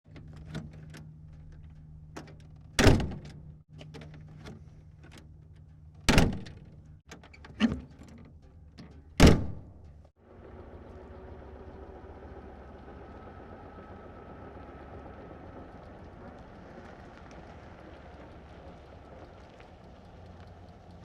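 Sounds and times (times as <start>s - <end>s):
car door slamming: 2.8s - 3.3s, 6.1s - 6.6s, 9.2s - 9.7s.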